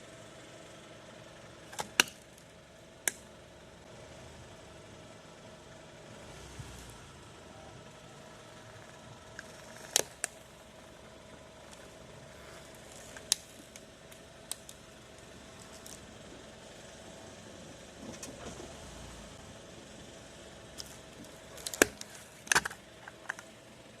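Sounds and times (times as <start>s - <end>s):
plastic and glass cracking: 20.8s - 23.5s.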